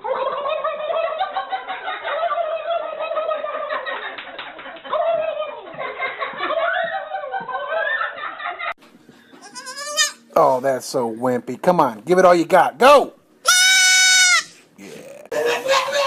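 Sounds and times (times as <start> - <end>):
laughter: 0.0 - 8.8, 15.3 - 16.0.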